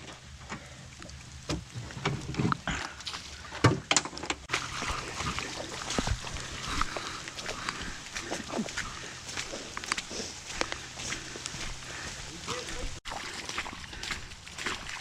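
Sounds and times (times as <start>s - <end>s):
light splashing: 4.4s - 15.0s
low steady hum: 4.5s - 15.0s.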